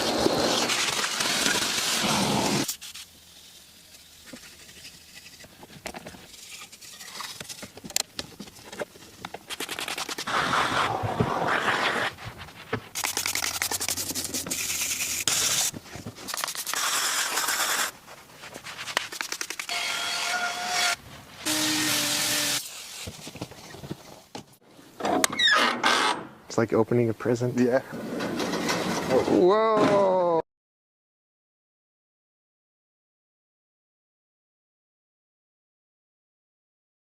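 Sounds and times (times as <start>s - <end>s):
scratching and scraping: 0.0s - 19.7s.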